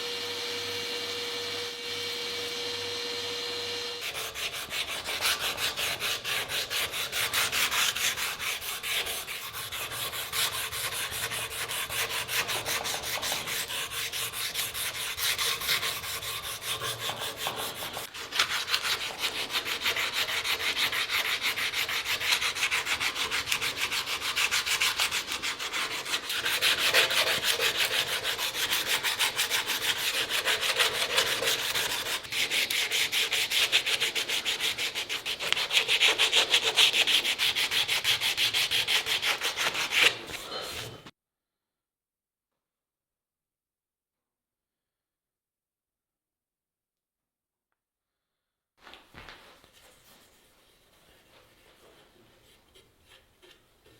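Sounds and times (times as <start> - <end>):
hand sanding strokes: 4.0 - 41.1, 49.8 - 53.9.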